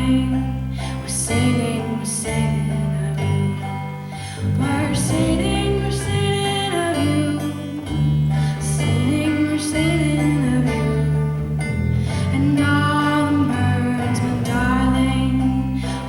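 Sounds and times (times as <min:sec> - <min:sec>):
person singing slow melody: 0:00.0 - 0:16.0
plucked strings: 0:00.0 - 0:16.0.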